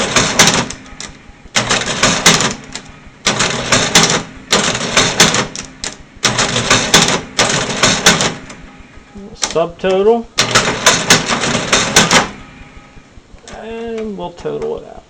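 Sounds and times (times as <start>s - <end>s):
cash register clattering: 0.0s - 8.6s, 9.4s - 12.5s.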